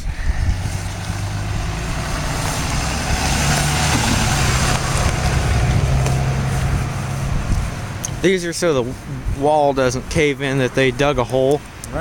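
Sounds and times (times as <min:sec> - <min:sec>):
engine running steadily: 0:00.0 - 0:09.4.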